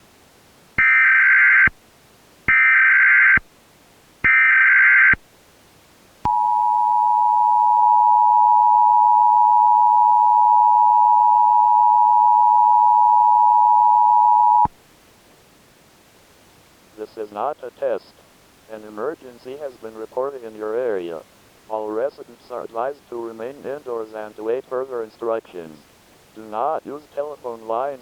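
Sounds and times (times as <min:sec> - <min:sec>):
two-tone attention signal: 0:06.3 - 0:14.7.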